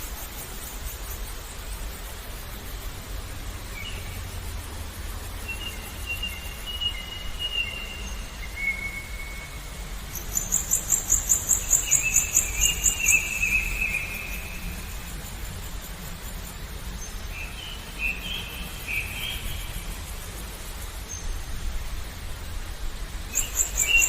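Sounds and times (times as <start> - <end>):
birds whistling: 23.4 - 24.0.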